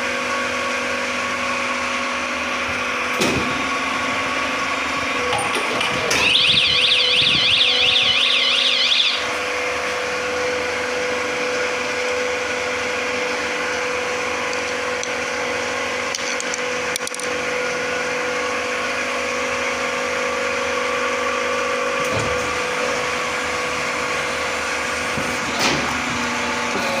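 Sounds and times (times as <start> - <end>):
machine motor and pump hum: 0.0 - 27.0
warbling electronic alarm: 5.3 - 9.4.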